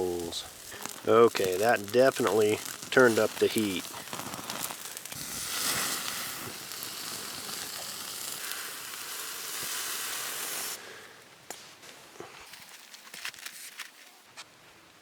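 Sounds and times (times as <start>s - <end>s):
steak sizzling over coals: 0.0s - 11.3s.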